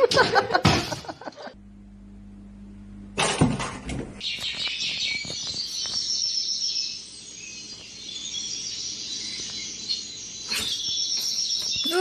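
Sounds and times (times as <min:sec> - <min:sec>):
high-pitched chirping and twittering: 0:04.2 - 0:12.0.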